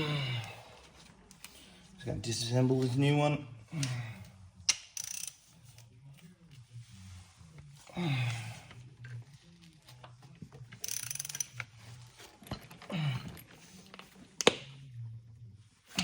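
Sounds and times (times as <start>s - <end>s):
ratchet clicking: 4.7s - 5.4s, 10.8s - 11.6s.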